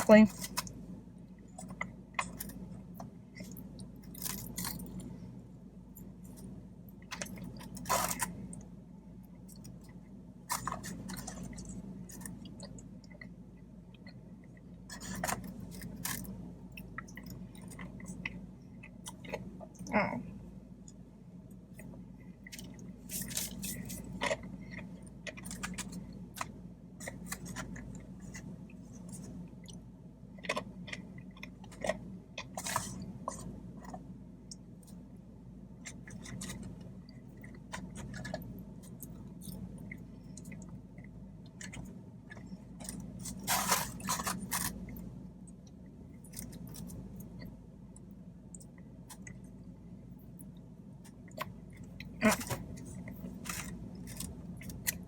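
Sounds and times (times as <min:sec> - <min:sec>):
person chewing food: 0:00.0 - 0:55.0
steady low hum: 0:00.0 - 0:55.0.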